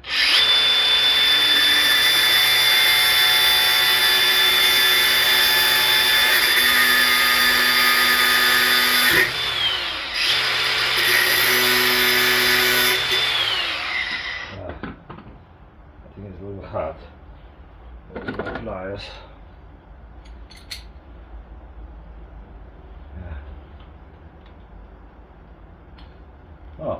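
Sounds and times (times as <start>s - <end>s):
electric power tool whining: 0.0s - 14.6s.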